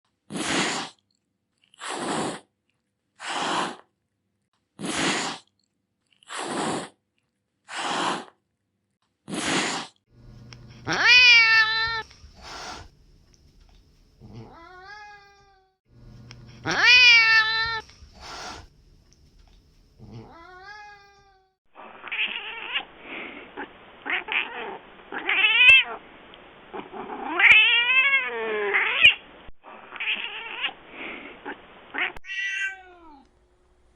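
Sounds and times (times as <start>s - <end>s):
cat hissing: 0.3s - 1.0s, 1.7s - 2.5s, 3.2s - 3.9s, 4.8s - 5.5s, 6.2s - 7.0s, 7.7s - 8.4s, 9.3s - 10.0s, 10.7s - 13.0s, 14.2s - 15.3s, 16.5s - 18.7s, 20.0s - 26.0s, 26.7s - 33.2s
cats meowing and yowling: 10.9s - 12.1s, 14.3s - 15.7s, 16.6s - 17.8s, 20.1s - 22.8s, 27.2s - 29.2s, 32.0s - 33.2s.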